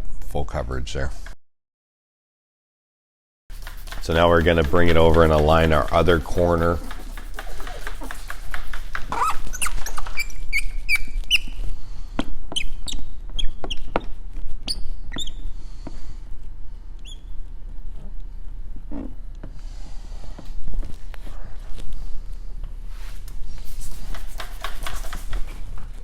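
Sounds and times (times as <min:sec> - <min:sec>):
plastic film squeaking: 0:03.6 - 0:11.4.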